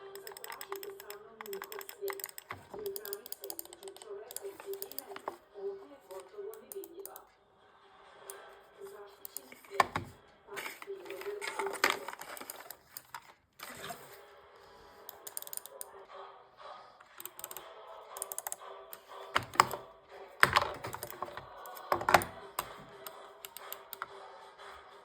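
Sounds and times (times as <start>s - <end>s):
plastic clicks and taps: 0.2s - 5.4s, 9.3s - 10.1s, 19.3s - 19.8s, 20.4s - 24.1s.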